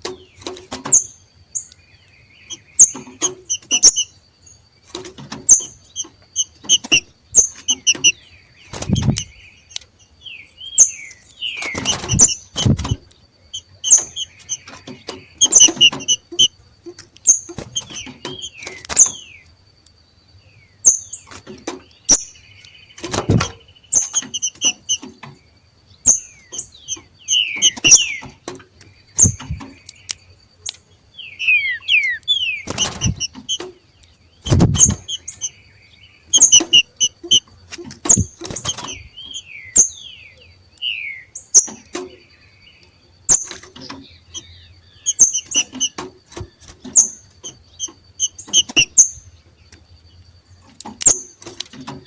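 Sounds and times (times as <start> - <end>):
birds chattering calls: 0.0 - 52.0
low thumps: 29.2 - 29.7, 34.4 - 35.2.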